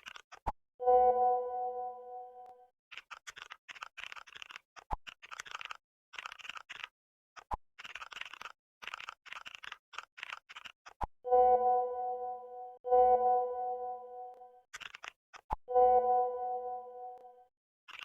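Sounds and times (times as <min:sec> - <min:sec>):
music with held tones: 0:00.8 - 0:02.7, 0:11.3 - 0:14.6, 0:15.7 - 0:17.5.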